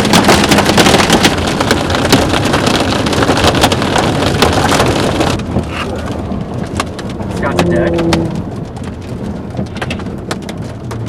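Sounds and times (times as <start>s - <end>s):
hard rain pelting vehicle: 0.0s - 11.0s
road and wind noise: 0.0s - 11.0s.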